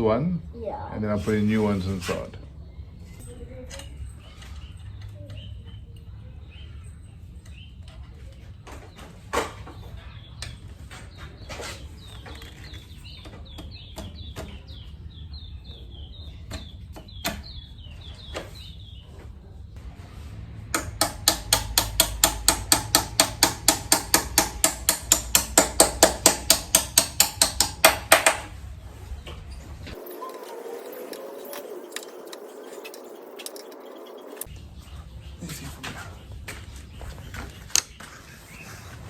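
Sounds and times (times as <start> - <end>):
bird chirping: 2.4 - 19.7, 29.0 - 39.0
rapid metallic taps: 20.8 - 28.5.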